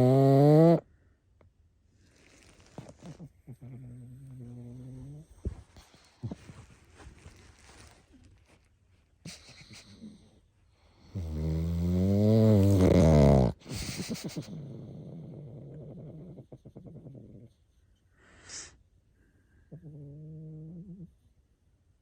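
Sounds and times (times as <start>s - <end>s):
person snoring: 0.0s - 0.8s, 11.1s - 16.4s
short puff of breath: 18.2s - 18.8s.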